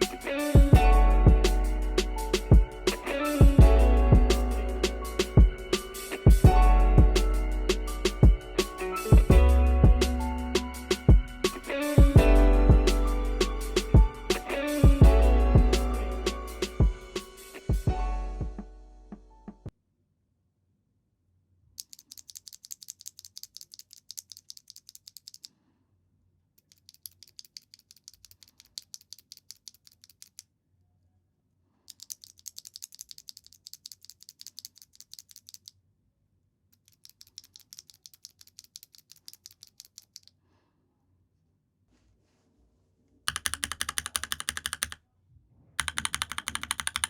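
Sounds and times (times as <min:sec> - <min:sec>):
mechanical keyboard switches clacking: 0:43.3 - 0:45.0, 0:45.8 - 0:47.0.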